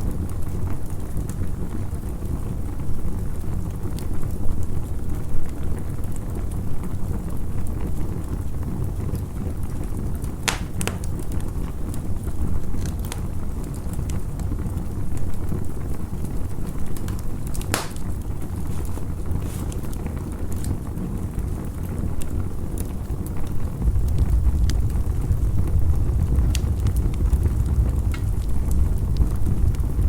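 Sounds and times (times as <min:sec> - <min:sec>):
campfire crackling and popping: 0:00.0 - 0:30.0.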